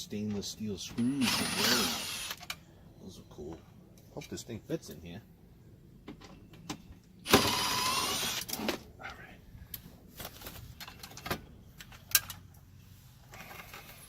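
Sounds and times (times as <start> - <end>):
small electric motor running: 1.0 - 2.4, 7.3 - 8.5.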